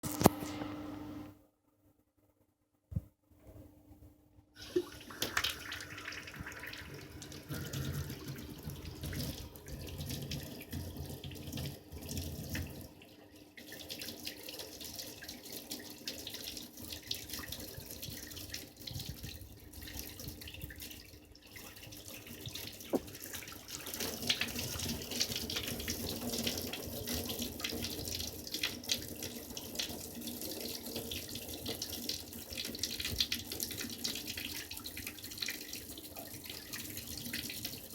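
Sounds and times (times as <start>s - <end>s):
tap running into sink: 4.6s - 6.8s, 22.9s - 23.3s.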